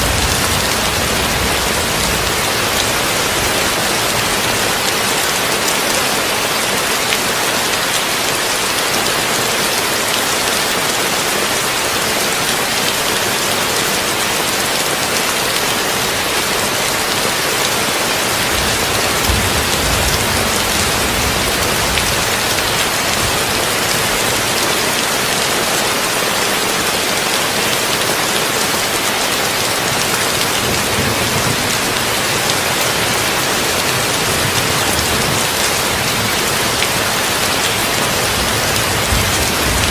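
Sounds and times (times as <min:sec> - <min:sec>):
heavy rain on a tin roof: 0:00.0 - 0:39.9
low rumble of thunder: 0:18.5 - 0:23.6, 0:38.4 - 0:39.9.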